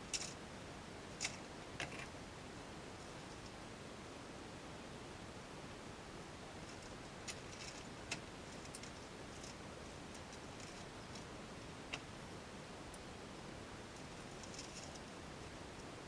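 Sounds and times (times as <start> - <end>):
light ticks and rustling: 0.0 - 0.4, 1.1 - 2.2, 2.9 - 3.6, 6.6 - 13.1, 13.8 - 16.0
steady hiss: 0.0 - 16.0.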